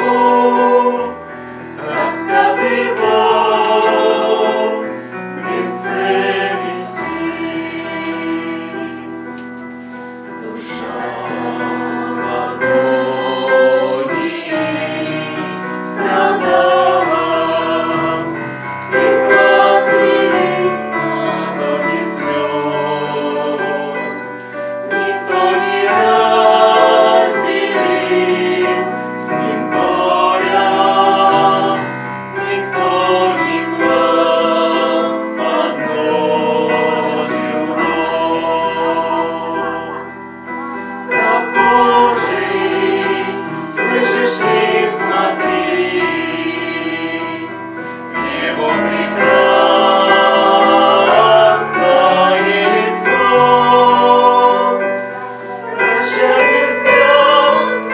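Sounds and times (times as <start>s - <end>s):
choir singing: 0.0s - 57.9s.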